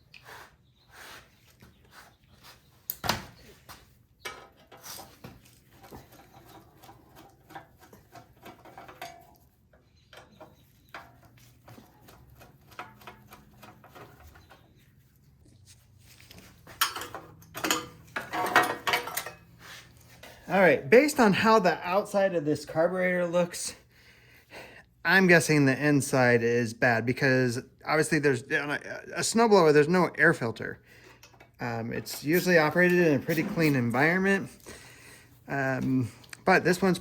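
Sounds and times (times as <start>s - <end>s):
clicks and rattles of parts: 4.2s - 14.7s, 16.3s - 19.5s.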